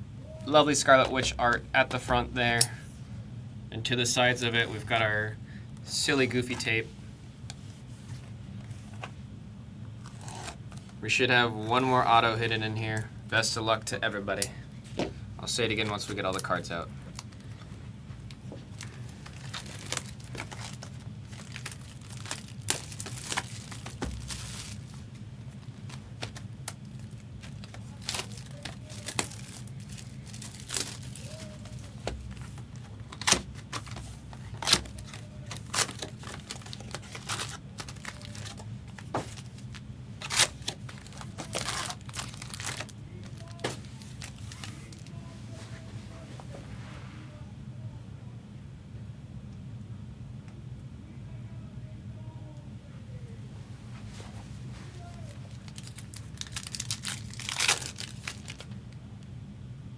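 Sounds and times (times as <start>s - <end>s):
low steady hum: 0.0s - 59.9s
card pack wrappers crinkling and tearing: 18.7s - 45.2s, 55.0s - 58.8s.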